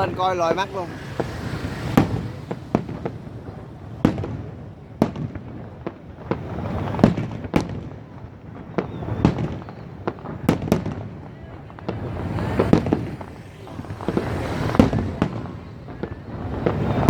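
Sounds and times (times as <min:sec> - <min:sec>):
steady background din: 0:00.0 - 0:05.0, 0:09.4 - 0:17.0
fireworks bangs: 0:00.0 - 0:17.0.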